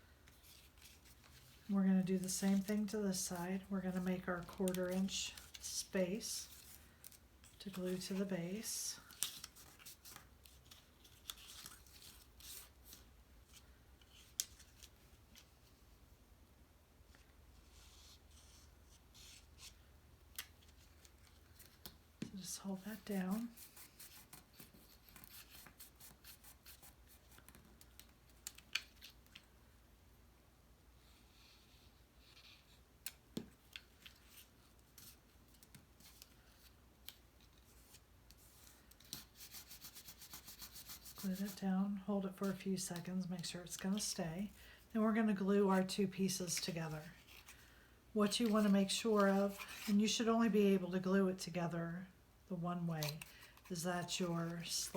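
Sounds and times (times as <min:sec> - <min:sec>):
paper rustling: 0:00.3 - 0:15.7, 0:46.5 - 0:50.2.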